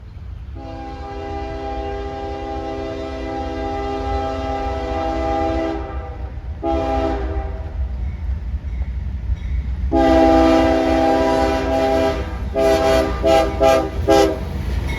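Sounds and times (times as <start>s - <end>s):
locomotive air horn blasts: 0.6s - 7.8s, 9.9s - 14.5s.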